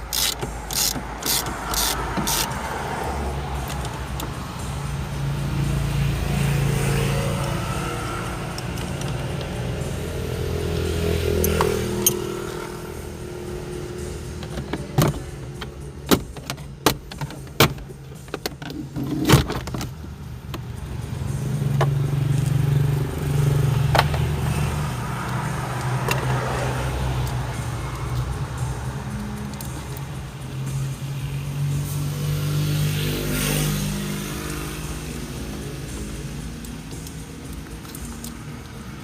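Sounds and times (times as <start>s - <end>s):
vehicle engine running: 0.0s - 39.0s
sharp clicks and knocks: 14.3s - 20.8s.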